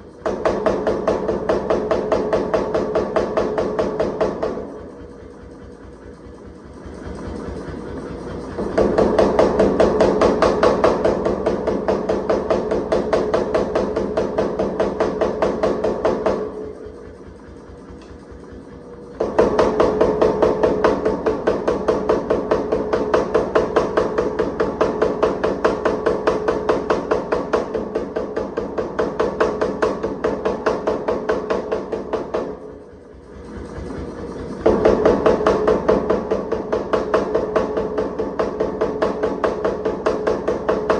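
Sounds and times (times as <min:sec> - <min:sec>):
machine motor running: 0:00.0 - 0:40.9.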